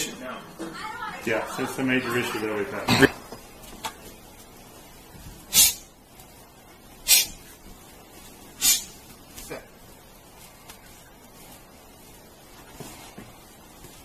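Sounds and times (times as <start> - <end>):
short sharp hissing: 5.4 - 6.0, 7.0 - 7.5, 8.5 - 9.0.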